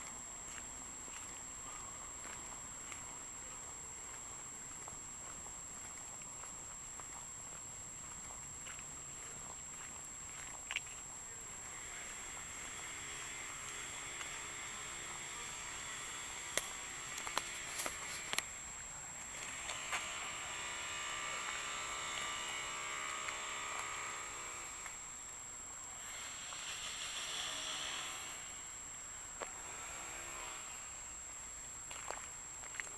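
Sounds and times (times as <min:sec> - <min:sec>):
street hiss: 0:11.0 - 0:32.9
thin high-pitched whine: 0:11.3 - 0:32.1.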